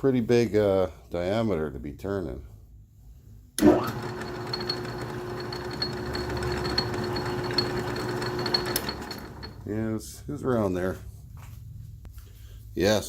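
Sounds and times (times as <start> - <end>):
metal lathe running: 3.6 - 9.7.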